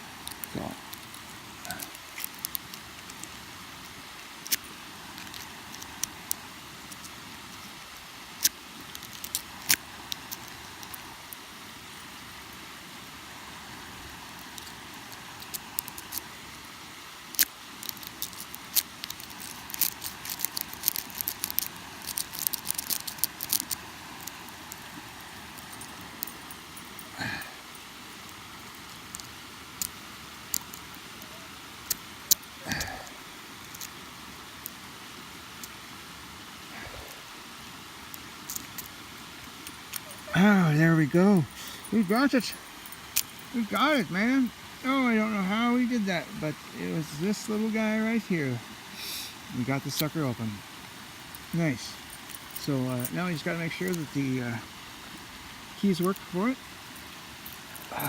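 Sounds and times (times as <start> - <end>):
background hiss: 0.0 - 58.0
lock-picking tools clicking: 41.5 - 43.6, 51.3 - 53.2.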